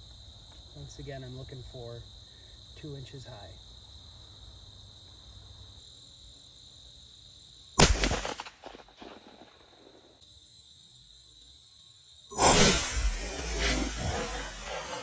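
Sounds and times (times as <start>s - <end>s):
crickets chirring: 0.0s - 15.0s
rifle shot: 7.8s - 10.0s, 12.4s - 15.0s.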